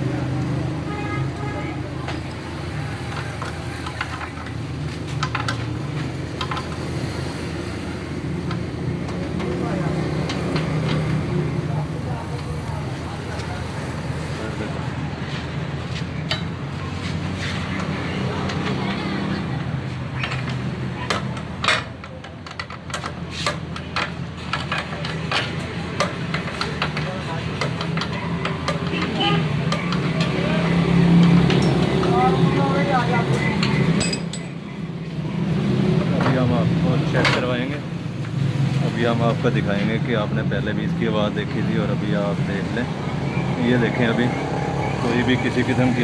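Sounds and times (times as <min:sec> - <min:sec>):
hand tools clicking and knocking: 0:03.0 - 0:07.0, 0:08.4 - 0:11.3, 0:19.6 - 0:32.2.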